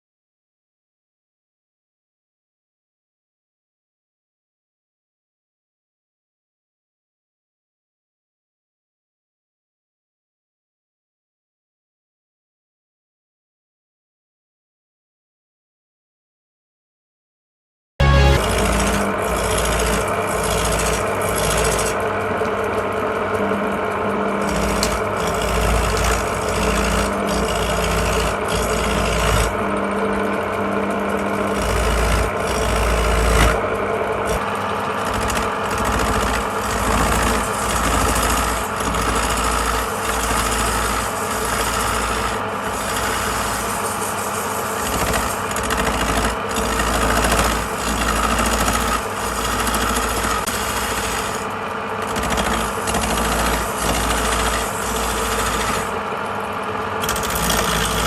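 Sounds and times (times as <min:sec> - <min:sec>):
tool scraping spinning wood: 0:18.0 - 0:58.0
wood lathe running: 0:18.0 - 0:58.0.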